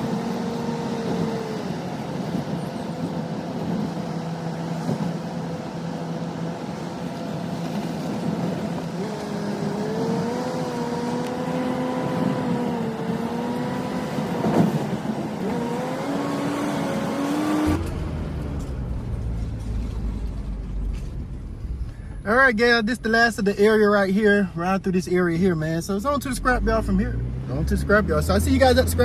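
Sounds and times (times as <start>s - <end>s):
truck engine running: 0.0s - 29.0s
low rumble: 17.7s - 29.0s.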